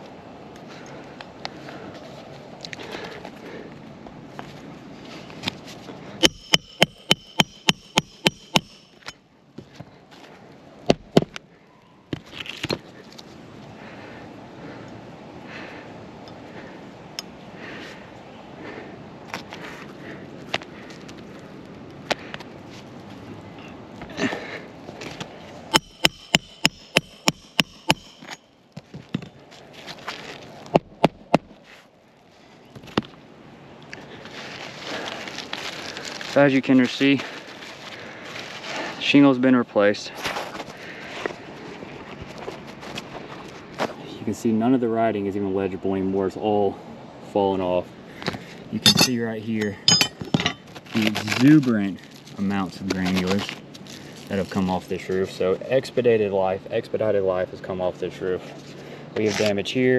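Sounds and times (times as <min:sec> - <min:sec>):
hammer striking roofing nails: 0:06.2 - 0:09.1, 0:25.7 - 0:28.3.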